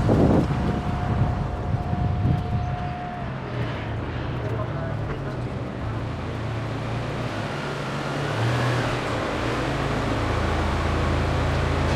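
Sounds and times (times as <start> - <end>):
car road noise: 0.0 - 11.9.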